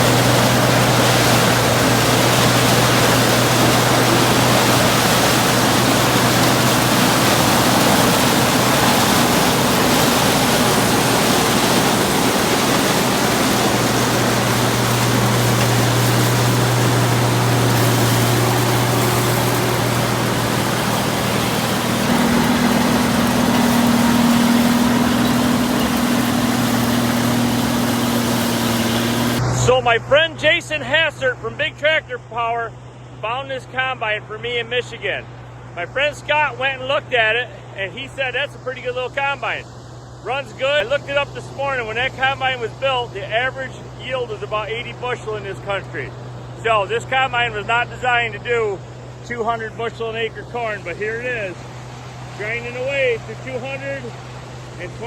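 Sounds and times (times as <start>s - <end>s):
higher machine hum: 0.0s - 31.6s
combine harvester running: 0.0s - 55.0s.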